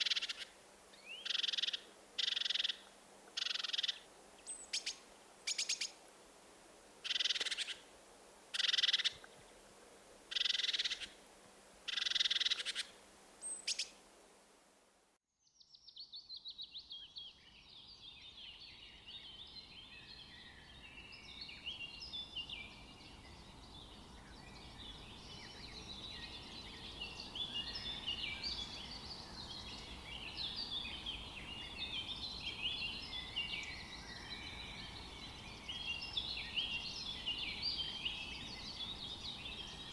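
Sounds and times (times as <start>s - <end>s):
raspy bird calls: 0.0s - 6.0s, 7.0s - 7.8s, 8.5s - 9.3s, 10.3s - 11.2s, 11.9s - 14.0s
many birds chirping: 16.8s - 39.9s.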